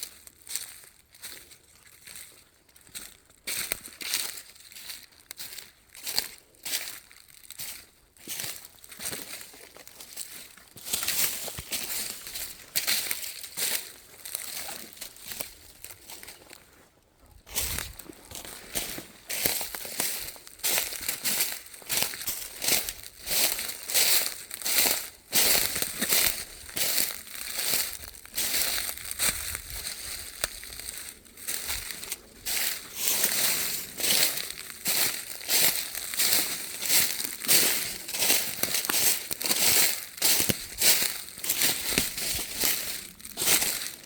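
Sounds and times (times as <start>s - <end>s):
footsteps crunching dry leaves: 0.0s - 44.0s.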